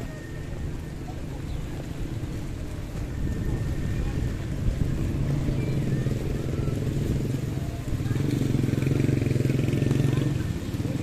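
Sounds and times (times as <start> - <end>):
street traffic: 0.0 - 11.0
vehicle engine running: 4.3 - 11.0.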